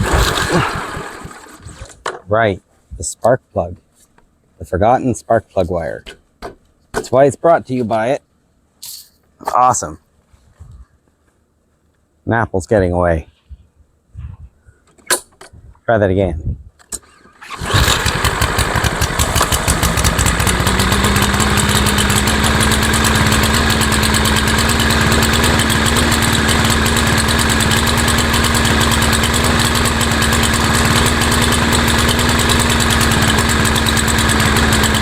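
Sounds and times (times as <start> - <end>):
lawnmower engine running: 0.0 - 1.9, 17.4 - 35.0.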